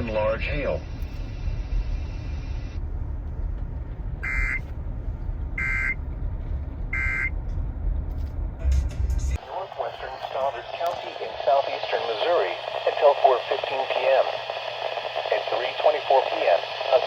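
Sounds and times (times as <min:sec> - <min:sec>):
low rumble of radio noise: 0:00.0 - 0:17.0
broadcast hiss: 0:09.4 - 0:17.0.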